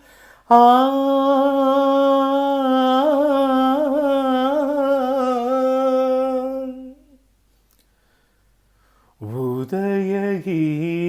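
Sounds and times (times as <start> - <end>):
man singing wordless note: 0.5 - 7.2, 9.2 - 11.0.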